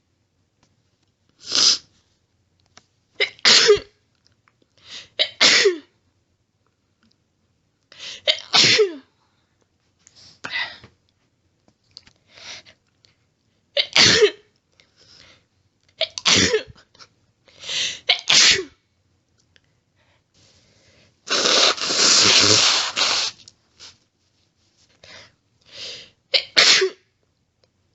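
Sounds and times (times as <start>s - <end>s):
small sniffs: 1.4s - 2.0s, 20.4s - 24.0s
woman sneezing: 8.3s - 9.0s, 18.1s - 18.8s, 21.3s - 23.4s, 26.4s - 27.0s.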